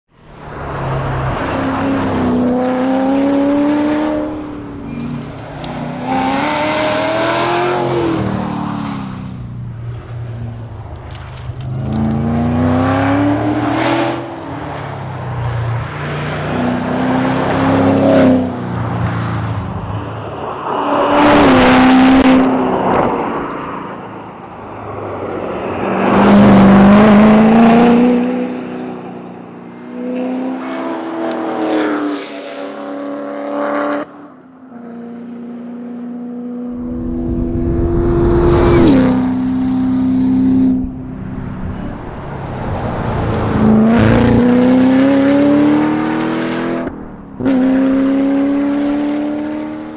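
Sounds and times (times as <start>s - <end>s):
car engine revving hard: 5.8s - 8.7s.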